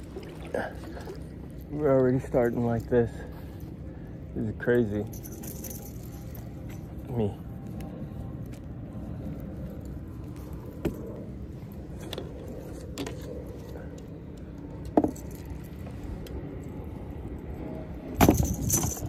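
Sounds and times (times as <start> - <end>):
low steady rumble: 0.0 - 19.0
fishing gear clicking and knocking: 18.2 - 19.0
rattling clatter: 18.2 - 19.0.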